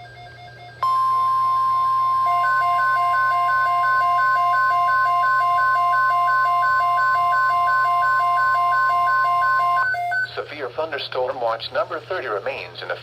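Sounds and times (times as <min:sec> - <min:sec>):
steady alarm tone: 0:00.0 - 0:10.4
two-pitch beeping: 0:00.8 - 0:10.4.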